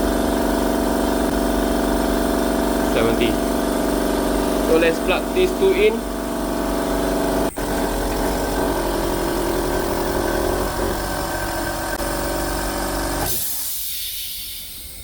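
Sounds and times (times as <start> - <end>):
air compressor humming: 0.0 - 15.0
hiss of air: 13.3 - 15.0.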